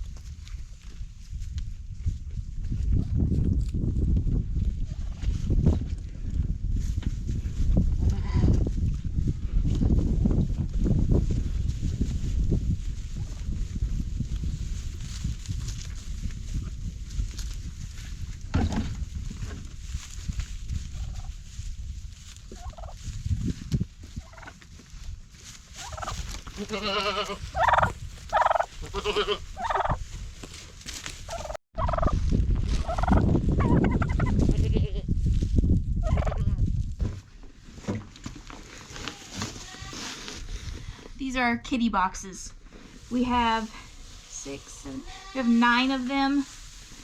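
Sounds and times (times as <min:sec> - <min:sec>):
poultry calling: 0:25.8 - 0:30.0.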